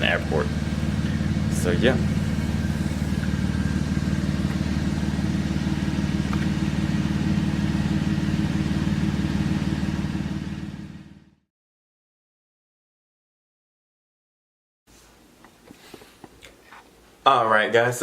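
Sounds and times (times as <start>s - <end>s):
car exhaust drone: 0.0s - 11.4s.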